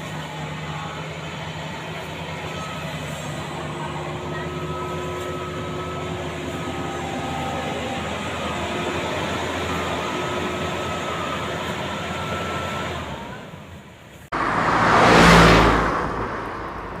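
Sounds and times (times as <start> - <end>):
combine harvester engine running: 0.0 - 17.0
loud rushing noise: 14.3 - 17.0.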